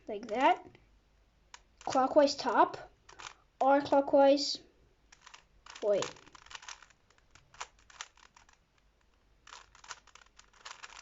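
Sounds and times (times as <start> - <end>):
puzzle cube layers clicking: 0.1 - 0.7, 1.5 - 2.4, 3.1 - 3.4, 5.1 - 11.0.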